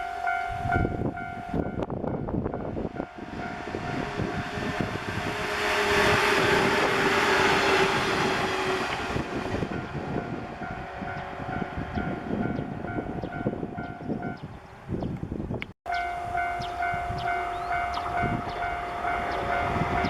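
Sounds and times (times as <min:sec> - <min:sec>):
level crossing bell ringing: 0:00.0 - 0:01.8, 0:15.9 - 0:20.0
train passing: 0:00.0 - 0:20.0.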